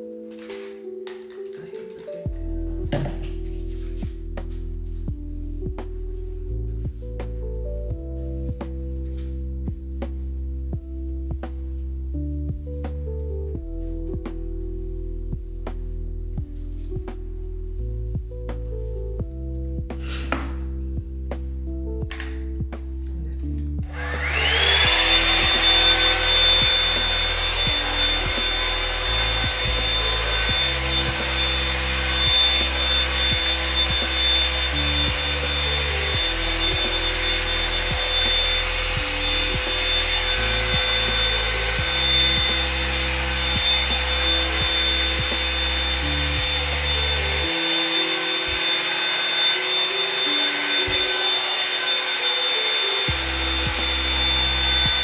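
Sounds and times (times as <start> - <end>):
background music: 0.0 - 55.0
blow dryer brush whining: 23.8 - 55.0.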